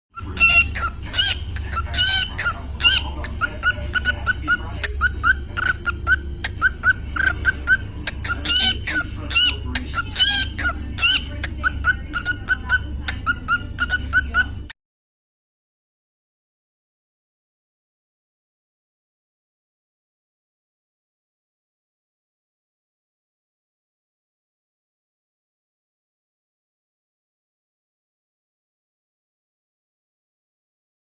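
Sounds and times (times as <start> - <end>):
cockatiel chirping: 0.2 - 14.7.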